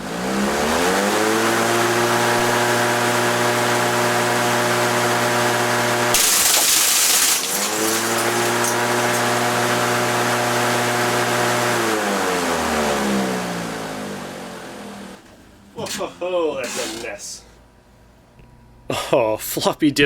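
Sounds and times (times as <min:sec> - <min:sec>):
lawnmower engine running: 0:00.7 - 0:17.3
blade crunching floppy disks: 0:06.1 - 0:09.8.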